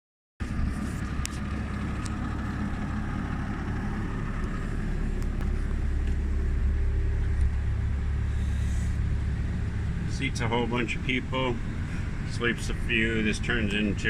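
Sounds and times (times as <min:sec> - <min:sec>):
diesel engine idling: 0:00.4 - 0:14.0.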